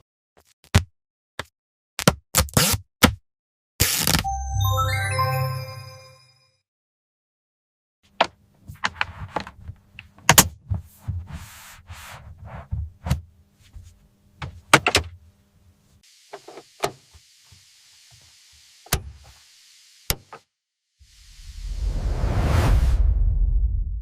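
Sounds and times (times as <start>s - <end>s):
steady hiss: 16.0s - 20.1s.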